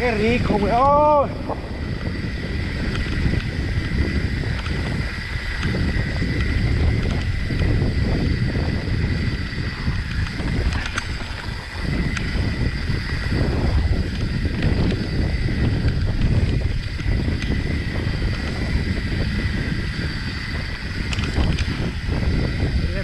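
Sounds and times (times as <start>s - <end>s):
bike clicks and rattles: 0.0s - 23.0s
wind buffeting microphone: 0.0s - 23.0s.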